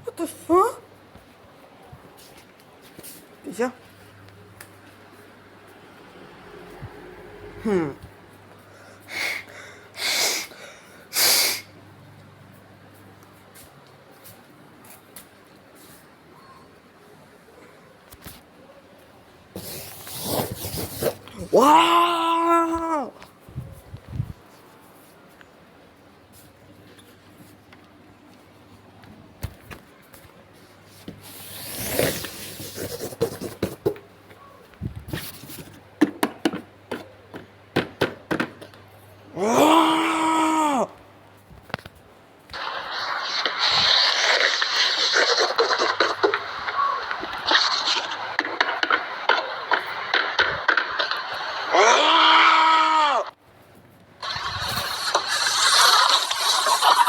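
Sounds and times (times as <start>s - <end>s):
rubbing hissing strokes: 42.6s - 51.7s, 54.2s - 57.0s.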